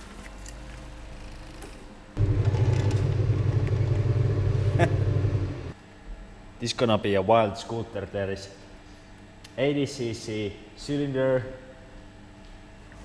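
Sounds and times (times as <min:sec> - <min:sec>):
motor fluttering rumble: 0:02.2 - 0:05.8.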